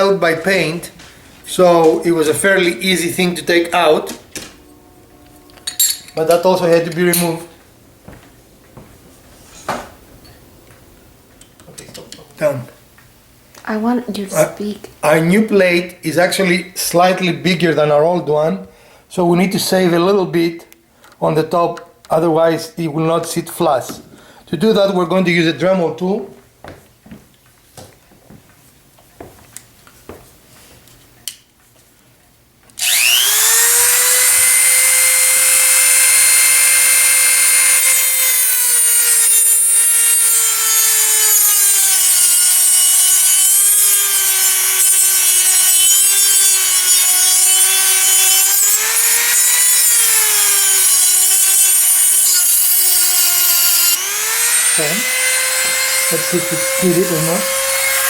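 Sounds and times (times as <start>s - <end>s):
rotary tool whining: 32.8s - 58.0s.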